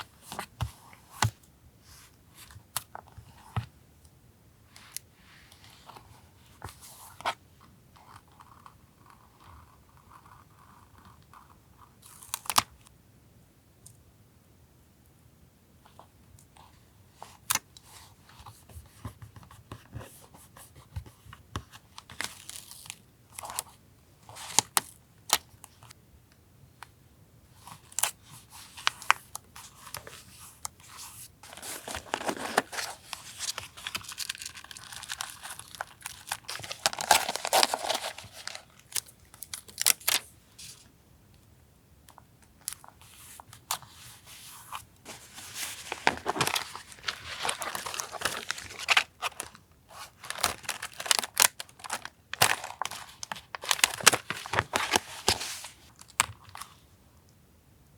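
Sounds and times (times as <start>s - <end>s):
paper rustling: 29.7s - 40.8s, 43.3s - 56.7s
paper tearing and crinkling: 31.5s - 38.8s, 45.1s - 49.5s, 50.2s - 55.7s.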